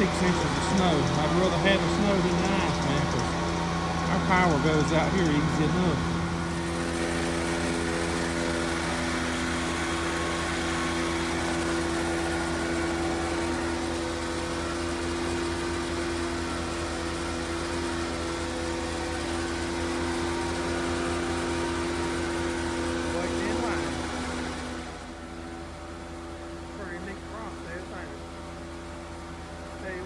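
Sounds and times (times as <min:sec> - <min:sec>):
machine humming: 0:00.0 - 0:30.0.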